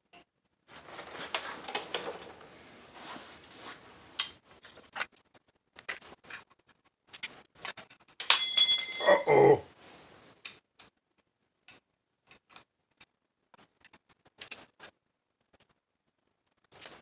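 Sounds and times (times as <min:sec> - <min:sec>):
small clicks and rustling: 0:00.1 - 0:08.1, 0:10.4 - 0:17.0.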